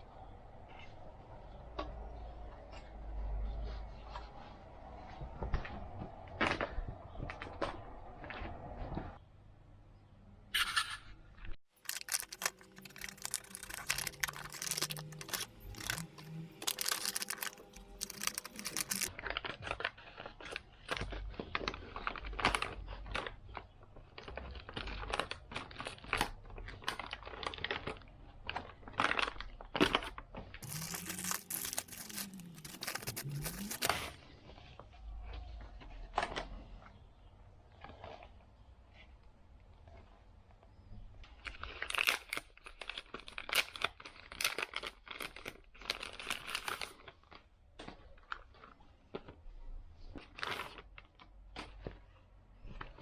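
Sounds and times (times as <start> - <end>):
crinkling and tearing: 11.8 - 23.6, 24.2 - 34.2, 41.3 - 49.4.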